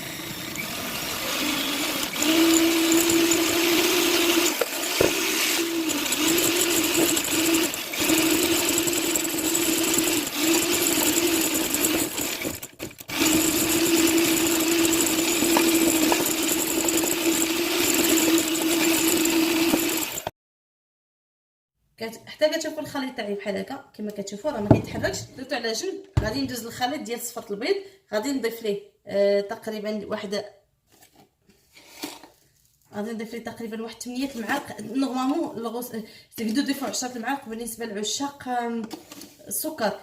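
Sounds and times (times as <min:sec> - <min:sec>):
electric mixer whipping: 0:00.0 - 0:20.3.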